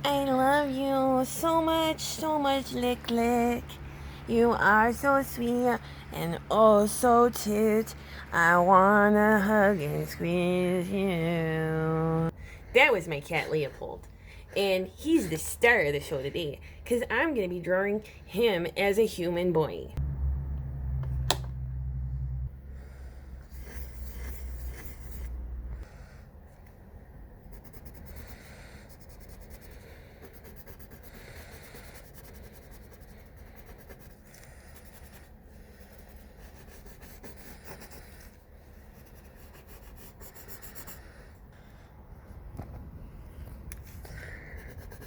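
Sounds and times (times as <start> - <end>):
low hum: 19.9 - 27.5
pencil scratching on paper: 23.5 - 25.4, 27.4 - 41.2, 44.2 - 45.0.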